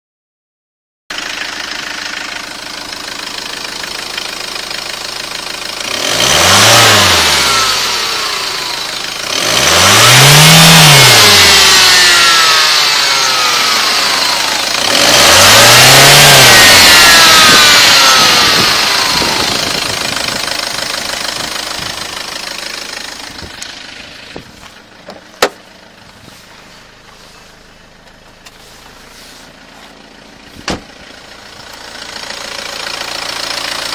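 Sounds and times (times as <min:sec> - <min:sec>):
diesel engine idling and revving: 0:01.1 - 0:33.9
engine whine rising and falling: 0:05.9 - 0:28.6.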